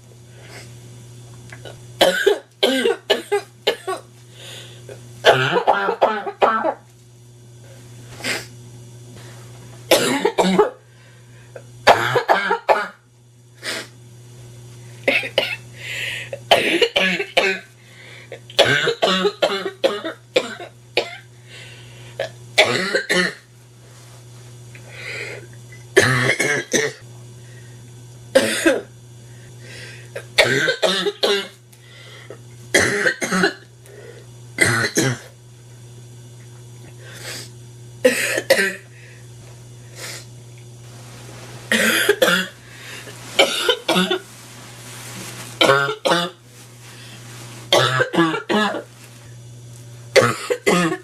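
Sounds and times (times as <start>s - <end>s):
woman coughing harshly: 2.0s - 4.1s, 5.2s - 6.8s, 9.9s - 10.8s, 11.8s - 13.0s, 15.1s - 15.6s, 16.4s - 17.7s, 18.6s - 21.3s, 22.2s - 23.5s, 26.0s - 27.0s, 28.4s - 28.9s, 30.2s - 31.6s, 32.7s - 33.6s, 34.6s - 35.3s, 38.0s - 38.9s, 41.7s - 42.6s, 43.4s - 44.2s, 45.6s - 46.4s, 47.7s - 48.9s, 50.2s - 51.0s.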